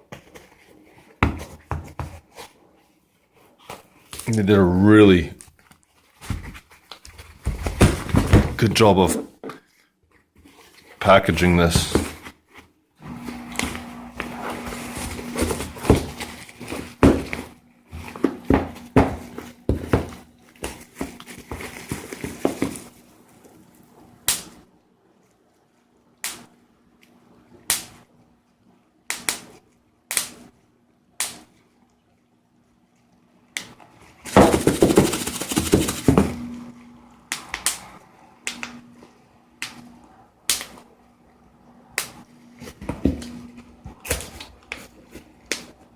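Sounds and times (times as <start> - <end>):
packaging rustling and scraping: 11.7 - 23.8, 33.9 - 36.7.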